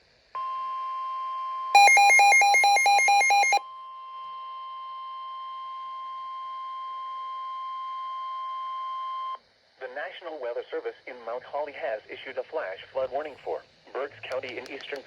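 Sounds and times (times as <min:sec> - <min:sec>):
rapid beeping alarm: 0:01.8 - 0:03.6
steady alarm tone: 0:01.8 - 0:03.6.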